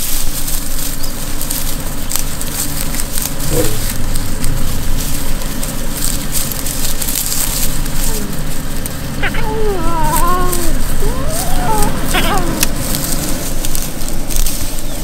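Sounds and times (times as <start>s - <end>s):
crackling noise: 0.0s - 15.0s
vehicle engine idling: 0.0s - 15.0s
lion cub whining call: 9.2s - 13.4s.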